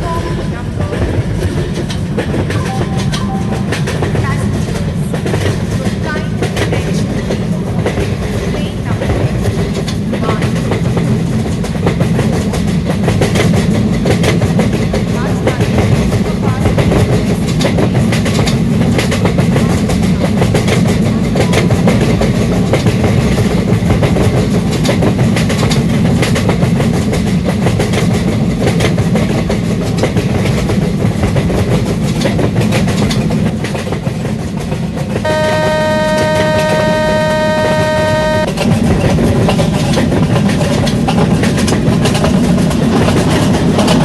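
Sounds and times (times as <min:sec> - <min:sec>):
train rumbling on rails: 0:00.0 - 0:44.0
wheels clicking over rail joints: 0:00.0 - 0:44.0
train horn: 0:35.2 - 0:38.7.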